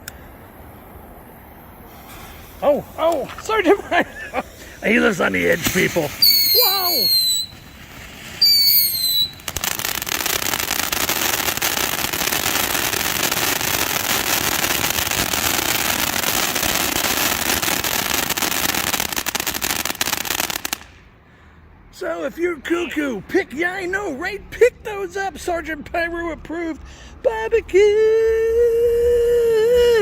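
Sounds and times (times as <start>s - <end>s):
firework fountain hissing and crackling: 0.0s - 21.2s, 22.0s - 30.0s
firework whistle falling in pitch: 6.2s - 7.8s, 8.4s - 9.5s.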